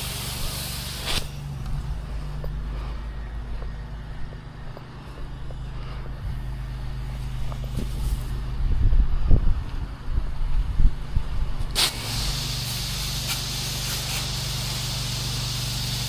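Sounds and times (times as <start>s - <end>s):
pump engine humming: 0.0s - 16.0s
low thumps and rumbling: 1.3s - 11.8s.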